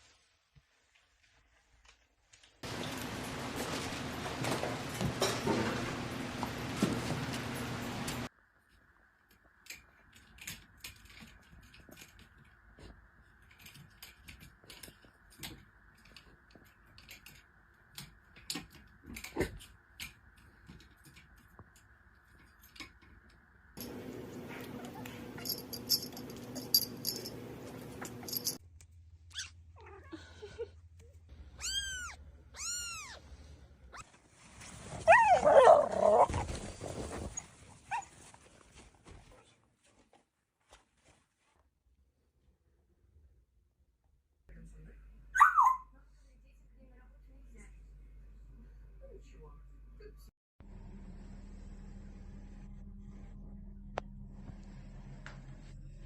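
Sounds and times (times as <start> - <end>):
cat meowing: 31.6 - 33.2.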